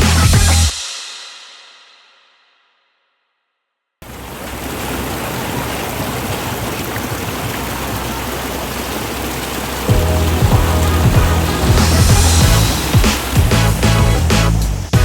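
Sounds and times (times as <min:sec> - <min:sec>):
background music with beat: 0:00.0 - 0:01.1, 0:09.9 - 0:15.0
water flowing and rushing: 0:04.0 - 0:15.0.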